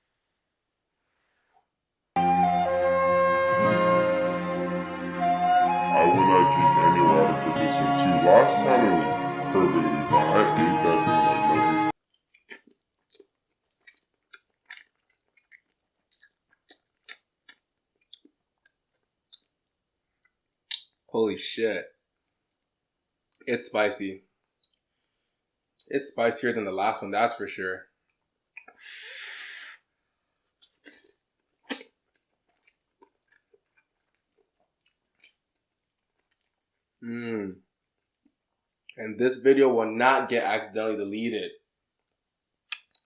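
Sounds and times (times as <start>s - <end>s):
wet chewing clicks and smacks: 12.3s - 19.6s, 30.6s - 36.6s, 42.0s - 43.0s.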